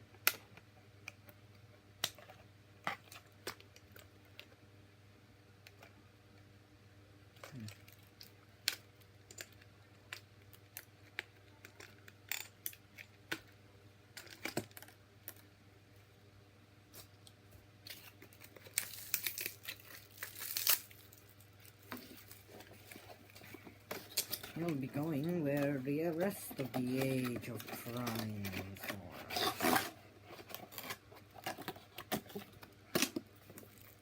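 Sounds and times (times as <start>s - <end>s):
packaging crinkling: 17.9s - 34.0s.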